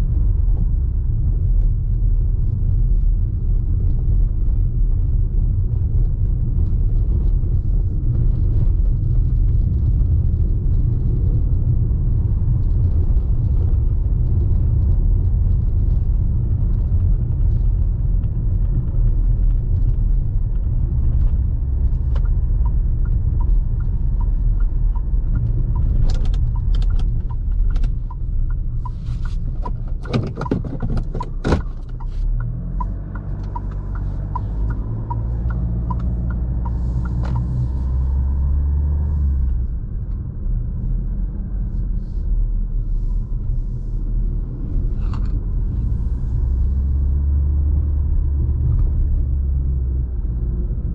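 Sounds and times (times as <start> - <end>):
diesel engine and road noise: 0.0 - 50.9
turn signal ticking: 0.1 - 40.5.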